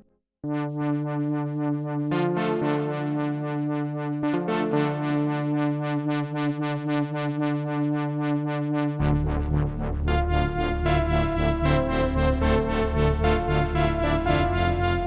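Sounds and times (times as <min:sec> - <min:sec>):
synthesizer chord with pulsing notes: 0:00.4 - 0:15.0
deep synth bass: 0:08.8 - 0:15.0.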